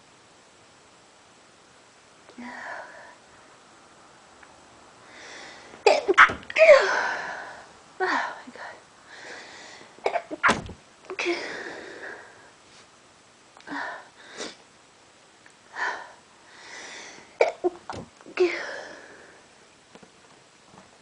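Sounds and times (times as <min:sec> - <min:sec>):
drawn-in breaths: 0:05.0 - 0:05.8, 0:08.6 - 0:10.0, 0:15.7 - 0:17.4
person sneezing: 0:05.9 - 0:07.2, 0:10.1 - 0:11.7.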